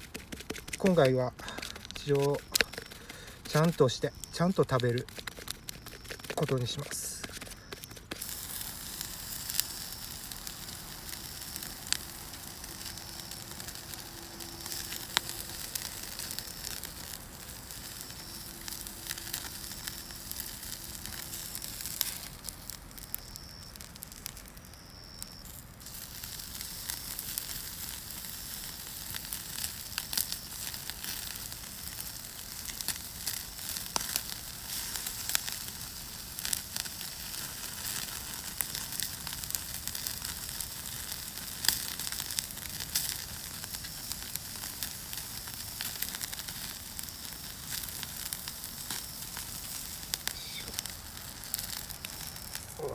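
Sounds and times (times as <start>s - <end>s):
wood fire crackling and popping: 0.0s - 52.9s
steak sizzling on a grill: 0.3s - 52.9s.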